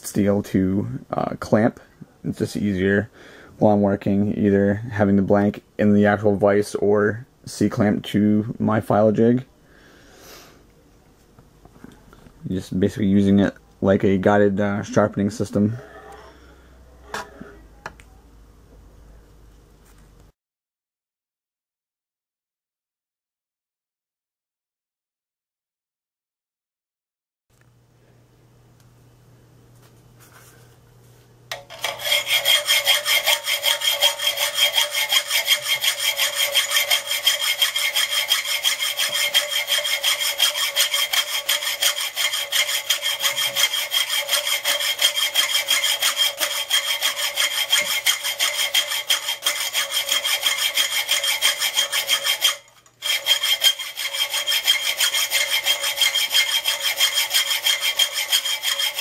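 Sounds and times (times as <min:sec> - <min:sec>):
file rasping on steel: 0:14.8 - 0:17.6, 0:31.5 - 0:59.0.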